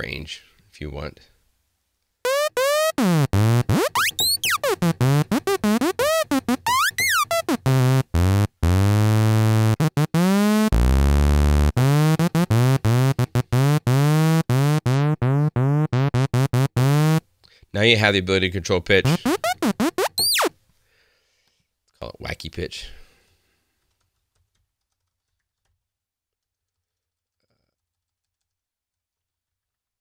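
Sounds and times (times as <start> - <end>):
synth lead notes swooping: 2.3 - 17.2, 19.1 - 20.5.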